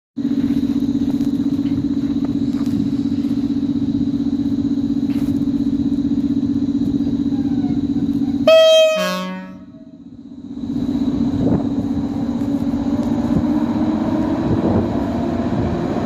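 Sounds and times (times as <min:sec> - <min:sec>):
electric locomotive humming: 0:00.2 - 0:16.0
two-note train horn: 0:07.5 - 0:10.0.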